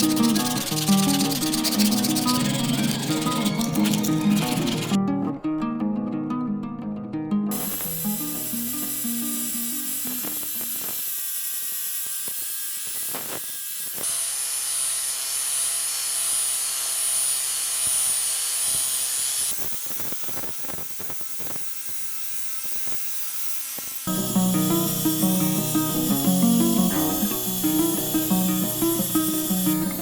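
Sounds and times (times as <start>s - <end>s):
small power tool whining: 0.0s - 5.0s, 7.5s - 30.0s.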